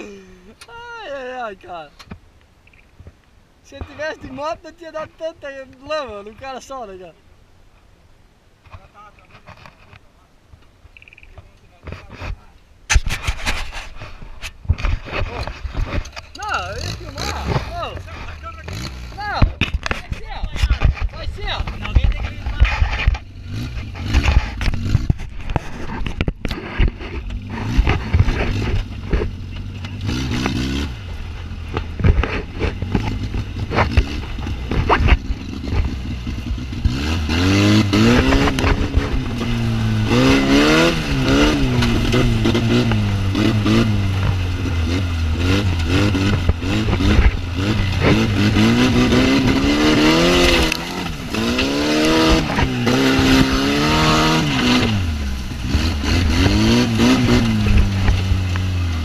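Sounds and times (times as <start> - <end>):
buggy engine revving: 12.9 - 59.0
engine knocks and clatter: 12.9 - 59.0.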